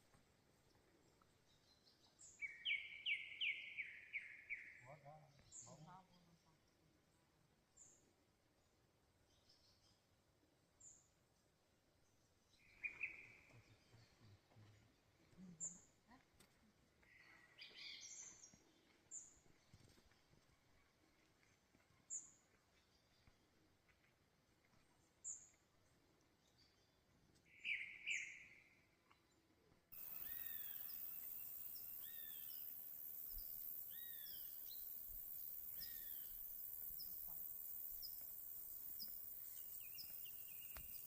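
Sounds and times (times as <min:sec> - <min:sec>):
birds chirping: 0:30.0 - 0:41.0
high insect buzz: 0:30.0 - 0:41.0.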